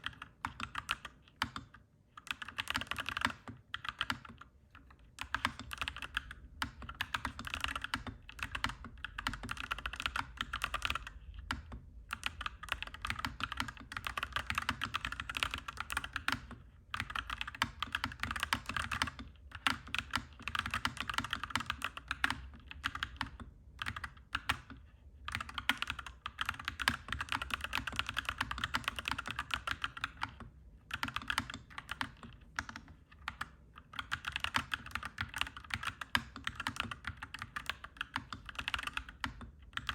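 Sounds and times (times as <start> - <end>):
typing on mechanical keyboard: 0.0 - 39.9.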